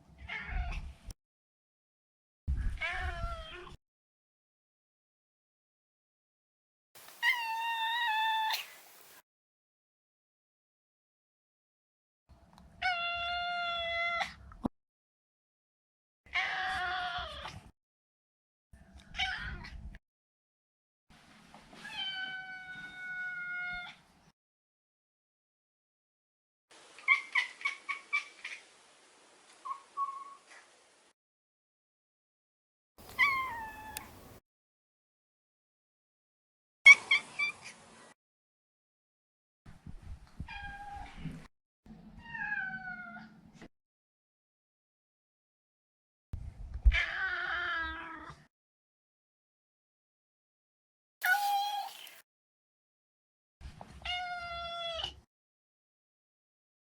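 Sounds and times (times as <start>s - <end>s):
cat meowing: 7.2s - 8.7s, 33.1s - 34.1s, 51.2s - 52.1s.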